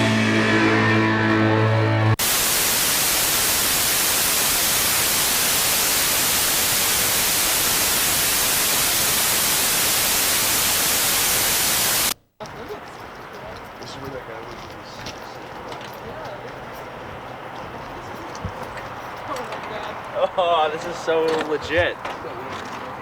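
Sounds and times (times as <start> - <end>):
rock band music: 0.0 - 2.2
loud static hiss: 0.0 - 12.2.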